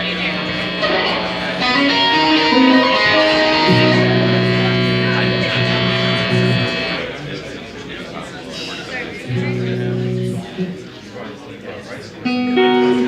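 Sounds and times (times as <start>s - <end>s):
guitar single notes: 0.0s - 7.1s, 9.2s - 10.9s, 12.2s - 13.0s
guitar low chord: 0.1s - 7.0s, 9.3s - 10.8s, 12.2s - 13.0s.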